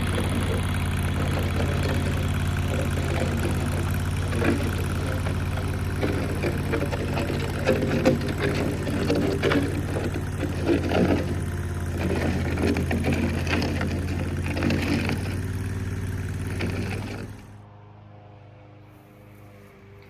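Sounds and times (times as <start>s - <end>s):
knocks and clattering: 0.0s - 17.5s
skid steer engine running: 0.0s - 17.7s.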